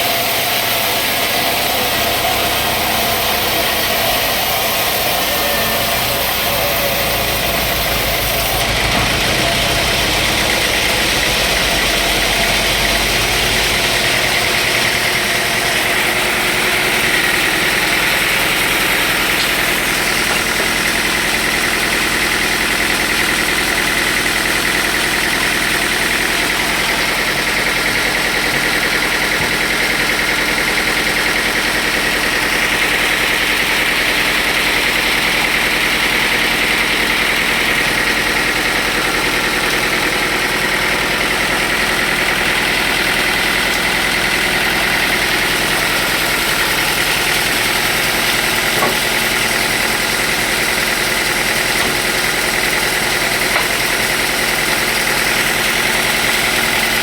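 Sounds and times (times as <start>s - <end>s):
high steady whine: 0.0s - 20.6s
sawmill machinery running: 0.0s - 57.0s.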